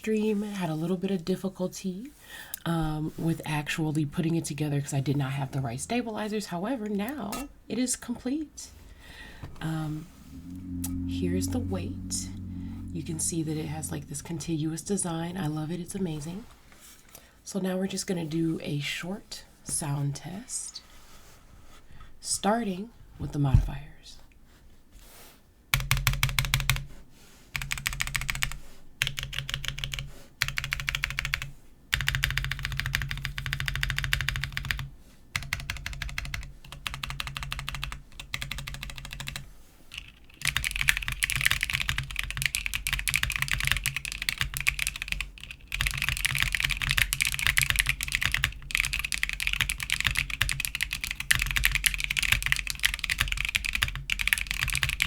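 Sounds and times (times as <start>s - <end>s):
fast mechanical keyboard typing: 25.8s - 26.9s, 27.6s - 55.0s.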